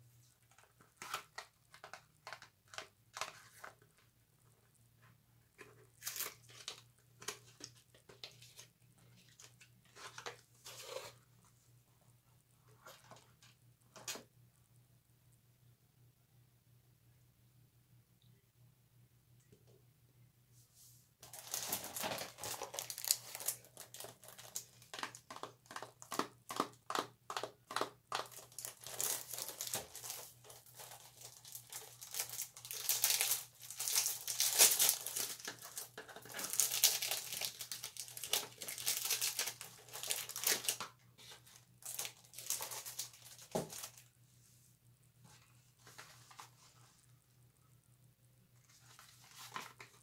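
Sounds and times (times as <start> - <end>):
soap wrappers crinkling: 0.5 - 4.1, 5.9 - 10.4, 21.2 - 44.1
wrapper tearing: 6.0 - 6.8, 21.2 - 25.8, 28.1 - 40.8, 41.8 - 44.0.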